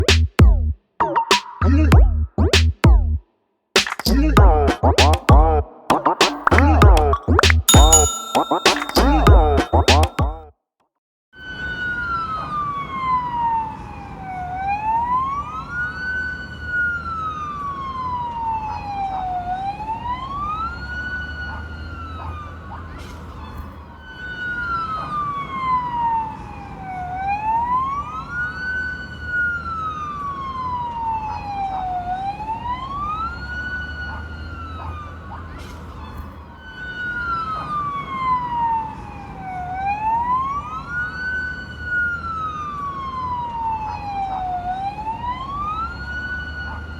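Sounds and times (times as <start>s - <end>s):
fire truck siren wailing: 11.4s - 46.9s.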